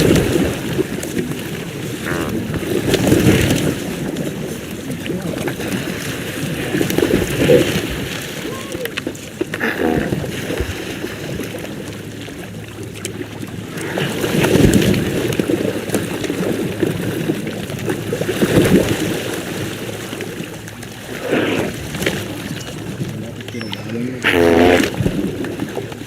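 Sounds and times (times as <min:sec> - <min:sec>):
watery background: 0:00.0 - 0:26.0
pelicans grunting: 0:01.6 - 0:03.5, 0:09.5 - 0:10.6, 0:23.5 - 0:25.4.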